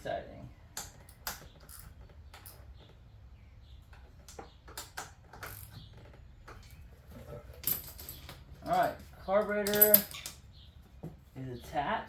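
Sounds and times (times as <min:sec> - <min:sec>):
hand tools clicking and tapping: 0:00.7 - 0:03.0, 0:03.9 - 0:06.8, 0:07.6 - 0:10.4.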